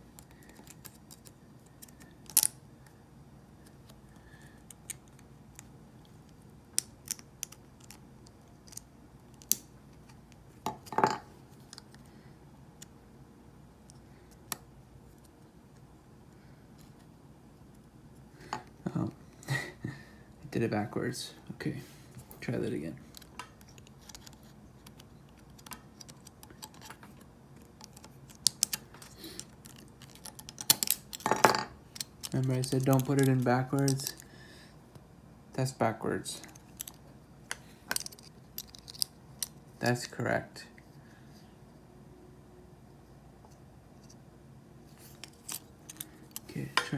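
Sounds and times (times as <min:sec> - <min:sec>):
plastic parts clicking: 0:00.2 - 0:02.6, 0:23.1 - 0:31.3, 0:31.9 - 0:34.3, 0:36.5 - 0:39.6, 0:45.1 - 0:46.6.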